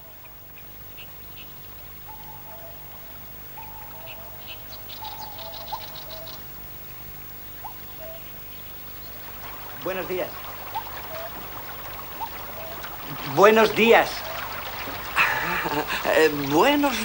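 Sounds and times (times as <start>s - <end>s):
birds calling and singing: 0.0s - 17.0s
flowing water: 0.0s - 17.0s
fast high bird trill: 1.0s - 6.4s.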